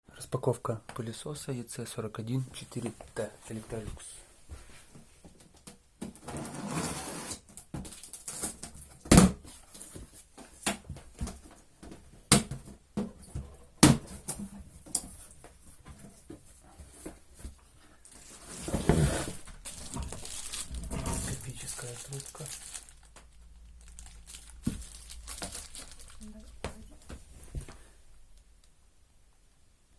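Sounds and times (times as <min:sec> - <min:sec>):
packaging rustling: 0:18.0 - 0:27.6.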